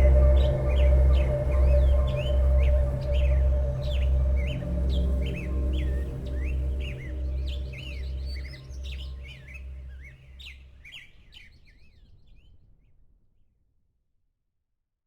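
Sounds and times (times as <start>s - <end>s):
low drone with pulsing bass: 0.0s - 10.6s.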